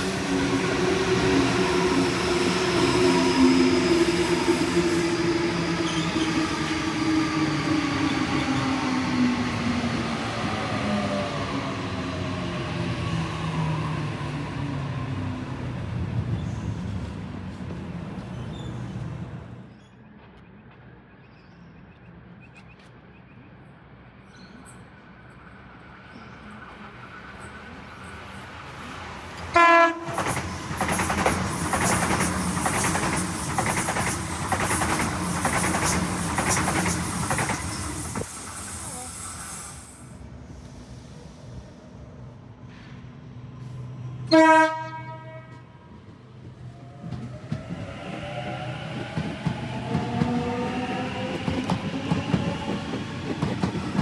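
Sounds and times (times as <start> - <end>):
train rail noise: 0.0 - 54.0
train wheel clatter: 29.1 - 39.0, 48.5 - 54.0
train horn blast: 29.5 - 30.2, 44.2 - 45.8.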